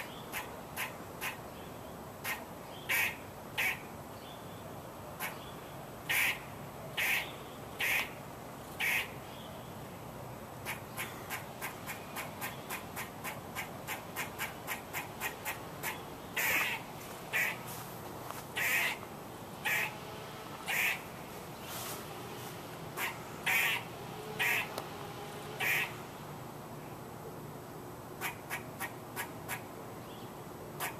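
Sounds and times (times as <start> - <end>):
squirrel alarm calls: 0.0 - 1.4, 2.2 - 3.9, 6.1 - 8.2, 8.8 - 9.2, 10.6 - 17.8, 18.6 - 20.0, 20.6 - 21.1, 22.9 - 24.8, 25.6 - 26.0, 28.2 - 29.7.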